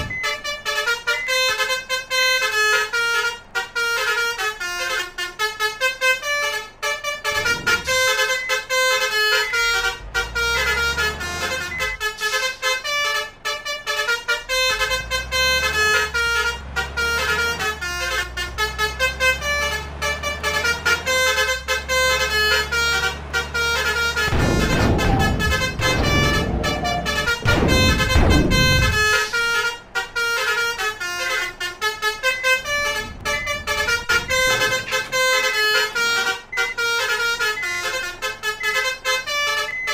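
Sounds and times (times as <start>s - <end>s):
multi-tone bus horn melody: 0.0s - 39.9s
low rumble: 24.3s - 29.2s, 32.6s - 34.9s.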